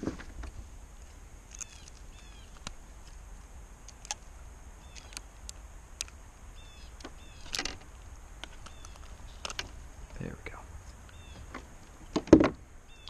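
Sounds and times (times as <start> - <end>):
low background rumble: 0.0 - 13.0
small bird chirping: 1.5 - 2.8, 4.8 - 5.3, 6.0 - 7.6, 8.4 - 12.1
sharp clicks: 3.8 - 6.2.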